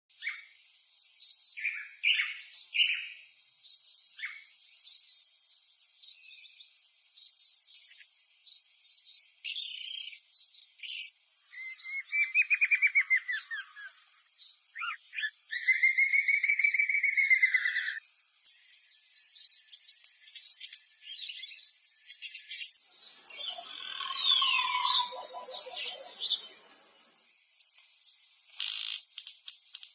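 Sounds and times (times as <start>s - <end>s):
birds chirping and whistling: 1.2s - 6.8s, 10.8s - 27.3s
fast bird trill: 23.1s - 26.6s.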